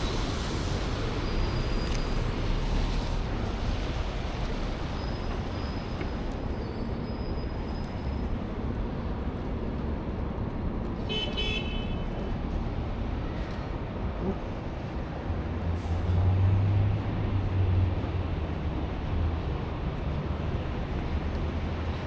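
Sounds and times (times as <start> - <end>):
city street traffic: 0.0 - 22.0
car horn honk: 11.1 - 12.0.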